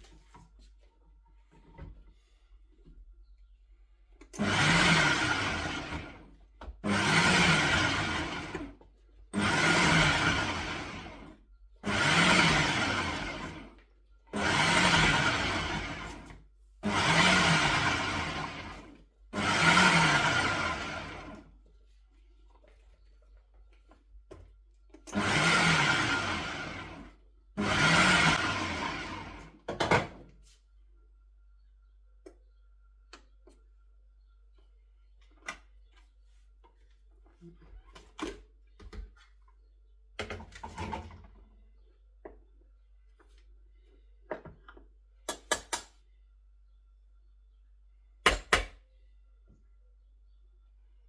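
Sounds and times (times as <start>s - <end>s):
food processor chopping: 4.4s - 8.7s, 9.4s - 13.7s, 14.3s - 21.4s, 25.1s - 30.1s.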